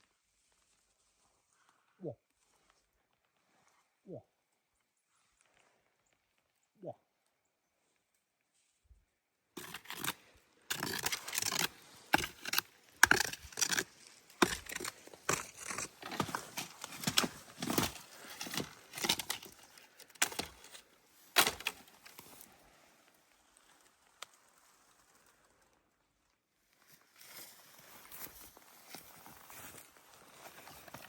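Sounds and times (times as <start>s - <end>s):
branches crackling and rustling: 9.6s - 25.7s, 26.8s - 31.0s.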